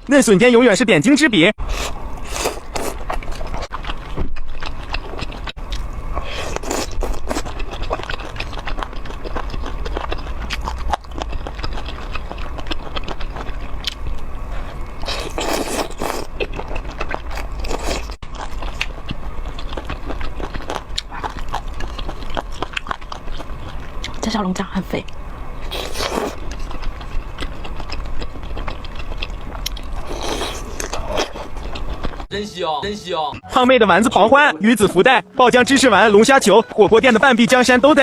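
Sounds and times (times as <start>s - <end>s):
wet chewing: 1.6s - 32.3s
crisp crunching bites: 15.0s - 24.2s, 25.7s - 32.2s.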